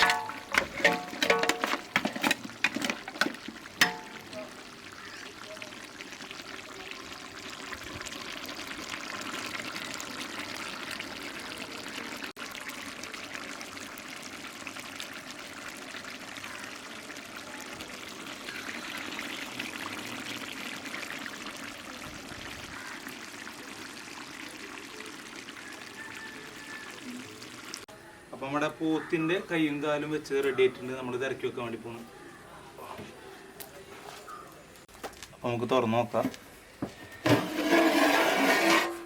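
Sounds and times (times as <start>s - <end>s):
curry bubbling in a pot: 0.0s - 27.9s.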